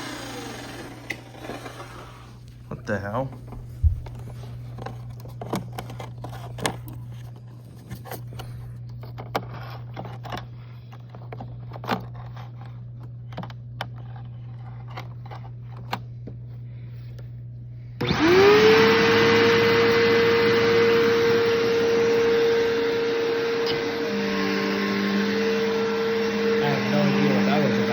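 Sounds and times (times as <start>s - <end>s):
vacuum cleaner motor running: 0.0s - 8.8s, 18.0s - 27.9s
low steady hum: 0.0s - 18.1s.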